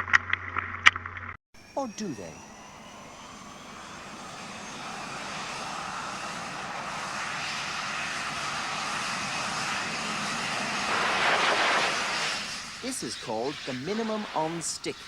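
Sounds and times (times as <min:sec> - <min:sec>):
airplane engines at high power: 0:01.6 - 0:15.0.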